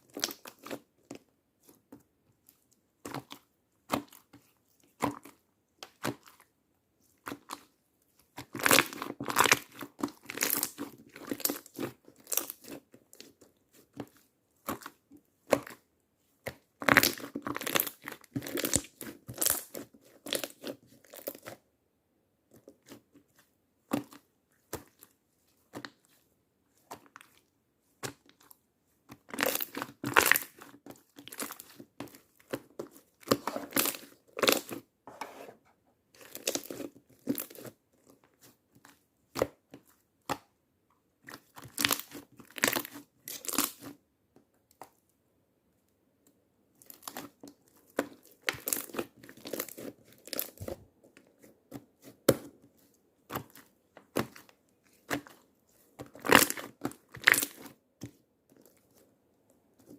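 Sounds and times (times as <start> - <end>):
slime popping and crackling: 8.4 - 12.8, 16.8 - 21.5, 29.2 - 34.7, 36.2 - 37.6, 41.4 - 43.9, 46.8 - 50.8, 56.0 - 57.7.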